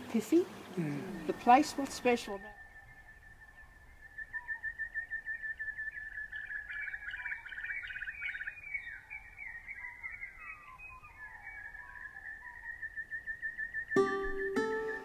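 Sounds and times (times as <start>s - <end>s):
birds chirping and trilling: 0.0s - 15.0s.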